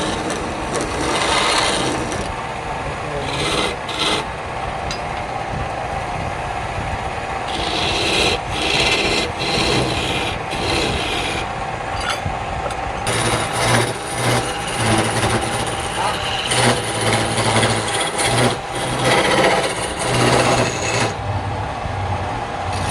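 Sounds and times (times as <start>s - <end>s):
tool scraping wood on lathe: 0.0s - 4.3s, 7.5s - 11.5s, 13.0s - 21.2s
lathe hum: 0.0s - 21.4s, 22.2s - 22.9s.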